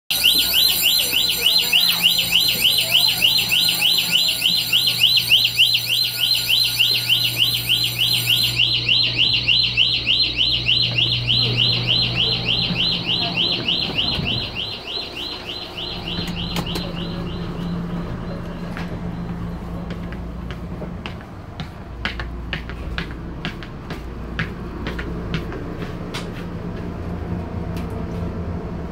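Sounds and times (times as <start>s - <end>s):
rapid electronic alarm warble: 0.1s - 19.9s
train carriage hum: 0.1s - 28.9s.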